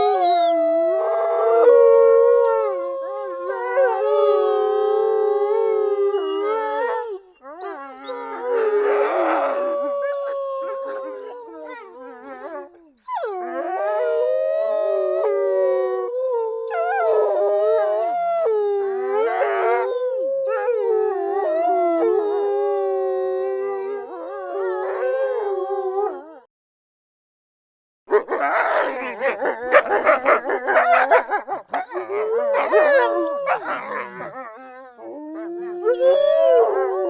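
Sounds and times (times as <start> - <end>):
wolves howling in chorus: 0.0 - 26.5, 28.1 - 37.0
wolves yelping: 28.1 - 35.1.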